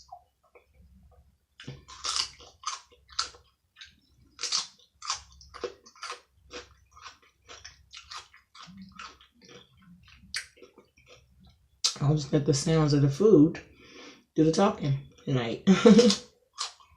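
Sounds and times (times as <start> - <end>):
person chewing crunchy food: 1.5 - 12.0, 16.0 - 16.9.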